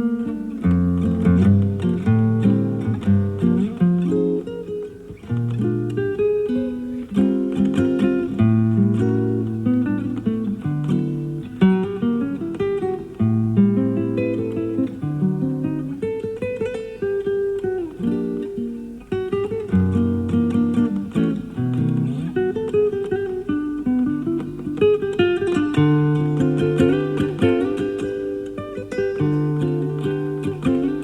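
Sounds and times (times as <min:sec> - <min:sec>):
classical guitar playing: 0:00.0 - 0:31.0.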